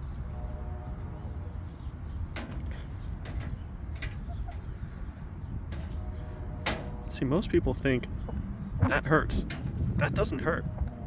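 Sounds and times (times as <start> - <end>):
hens pecking: 0.0 - 6.1
steady low rumble: 0.0 - 11.0.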